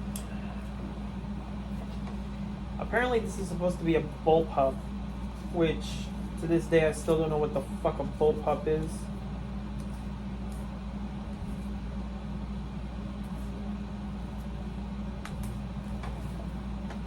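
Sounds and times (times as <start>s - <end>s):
air conditioner humming: 0.0s - 17.0s.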